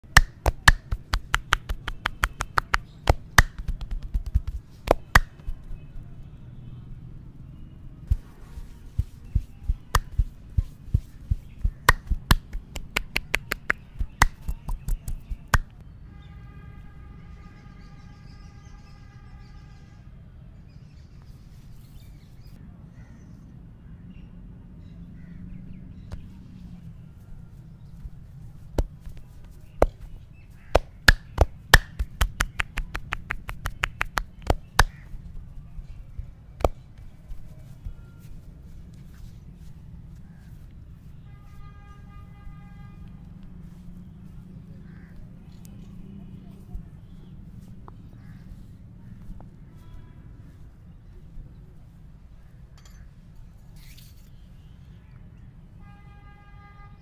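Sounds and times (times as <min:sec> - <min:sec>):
hand slaps and claps: 0:00.0 - 0:05.7, 0:08.1 - 0:15.8, 0:28.8 - 0:30.1, 0:30.7 - 0:35.2, 0:36.6 - 0:37.5.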